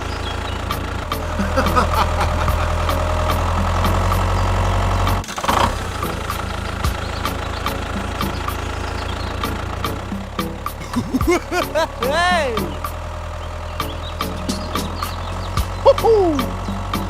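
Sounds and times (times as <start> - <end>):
light engine running with ticks: 0.0 - 1.3, 2.7 - 10.8, 12.8 - 17.0
vehicle engine humming: 0.0 - 17.0.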